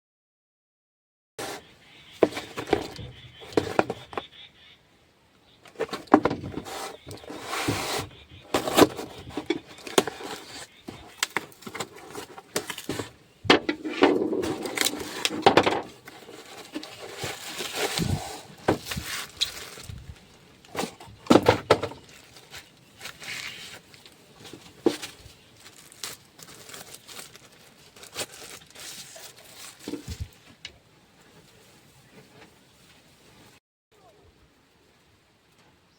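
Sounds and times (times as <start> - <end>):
box clicks and knocks: 2.2 - 4.3, 5.7 - 19.0, 20.7 - 22.1
packaging crinkling and tearing: 8.5 - 13.2, 14.4 - 20.9, 21.9 - 24.2, 24.8 - 30.4.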